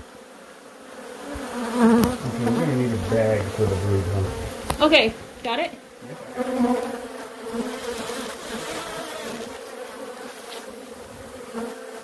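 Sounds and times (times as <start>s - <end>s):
bees buzzing: 0.0s - 12.0s.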